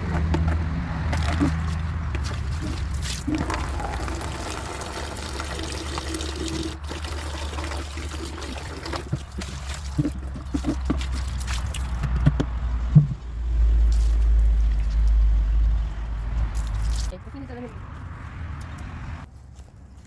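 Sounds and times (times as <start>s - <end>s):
knocks and clatters: 0.0s - 4.2s, 9.0s - 13.4s
water running and trickling: 1.4s - 12.0s.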